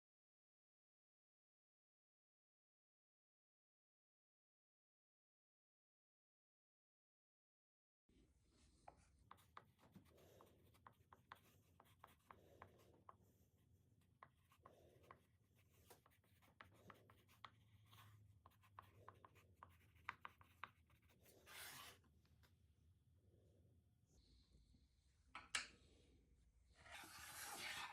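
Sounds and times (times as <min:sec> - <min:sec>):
faint scratching and rubbing: 0:08.6 - 0:22.1, 0:26.7 - 0:27.9.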